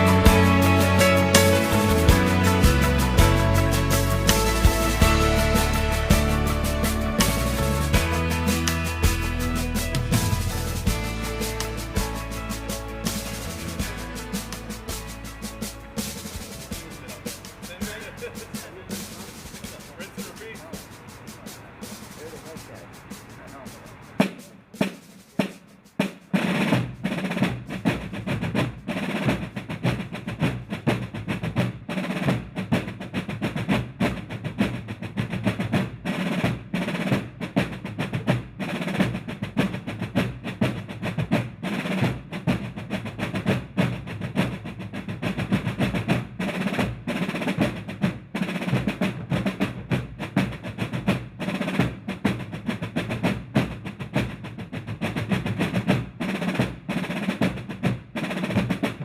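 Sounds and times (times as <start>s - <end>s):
fireworks bangs and crackling: 0.0s - 24.7s.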